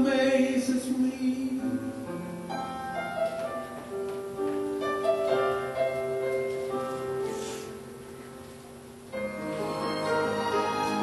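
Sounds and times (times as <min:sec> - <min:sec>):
piano chords: 0:00.0 - 0:11.0
held string notes: 0:09.2 - 0:11.0.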